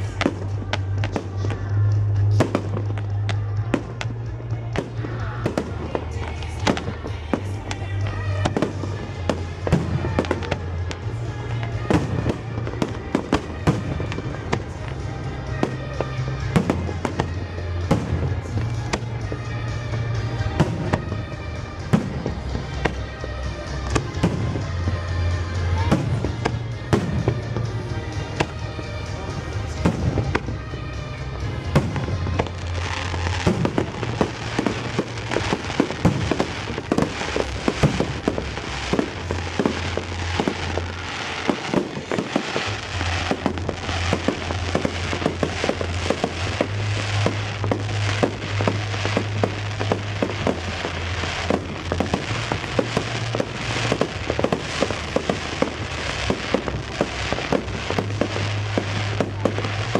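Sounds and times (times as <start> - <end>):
fireworks bangs and crackles: 0.0 - 59.9.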